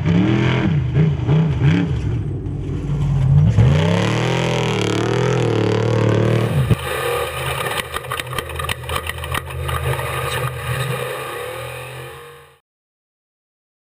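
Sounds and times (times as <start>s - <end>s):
motorcycle engine idling: 1.5s - 10.6s.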